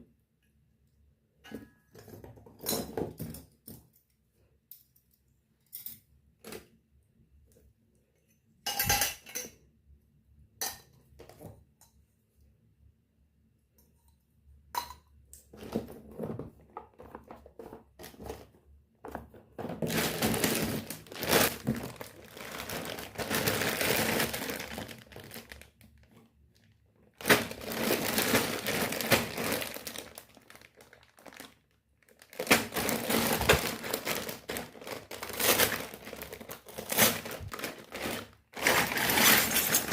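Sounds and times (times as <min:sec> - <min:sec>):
metal toy kitchenware clinking: 0:08.7 - 0:09.6, 0:38.8 - 0:39.9
plastic packaging crinkling and tearing: 0:19.8 - 0:39.9.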